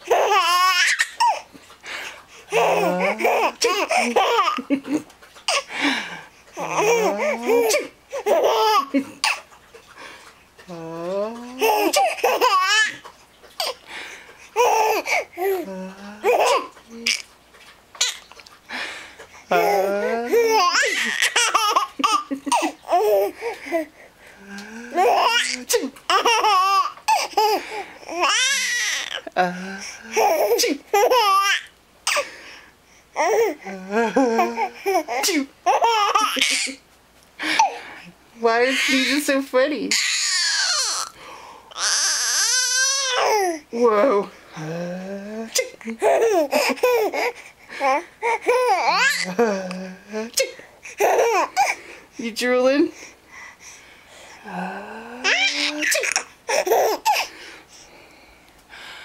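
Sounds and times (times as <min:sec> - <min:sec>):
baby laughing: 0:00.0 - 0:01.5, 0:02.5 - 0:05.7, 0:06.6 - 0:09.5, 0:11.5 - 0:13.8, 0:14.6 - 0:17.3, 0:19.5 - 0:23.9, 0:24.9 - 0:29.4, 0:30.1 - 0:32.2, 0:33.2 - 0:36.8, 0:45.6 - 0:49.5, 0:50.9 - 0:51.8, 0:55.2 - 0:57.3.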